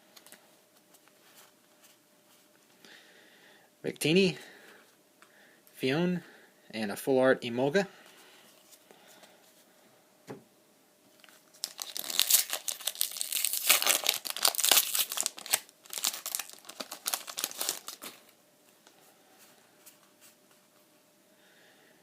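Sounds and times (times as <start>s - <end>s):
foil wrapper tearing and crinkling: 11.5s - 18.3s.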